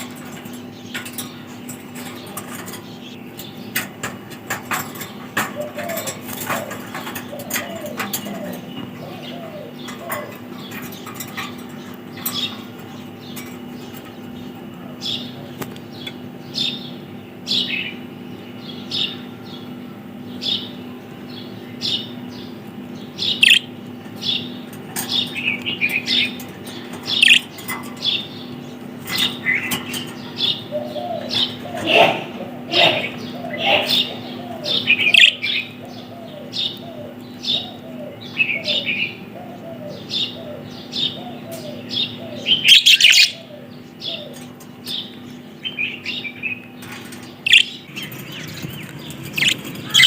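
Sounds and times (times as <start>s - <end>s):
budgerigars chirping: 21.4s - 50.0s.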